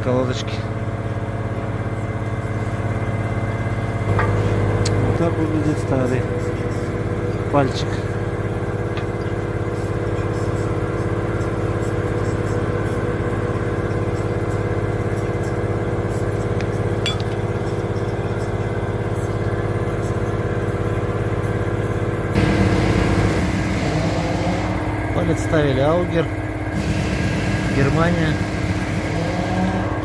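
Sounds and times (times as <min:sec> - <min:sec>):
vehicle engine idling: 0:00.0 - 0:30.0
faint metallic clinks: 0:17.0 - 0:17.4.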